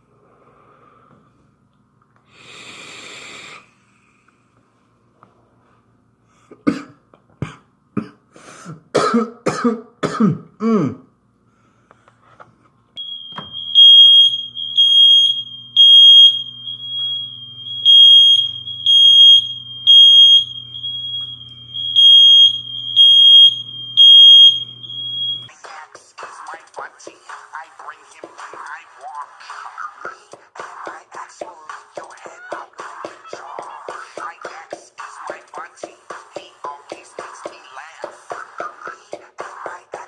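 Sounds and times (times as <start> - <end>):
person coughing hoarsely: 6.5 - 11.1
smoke detector beeping: 13.0 - 25.5.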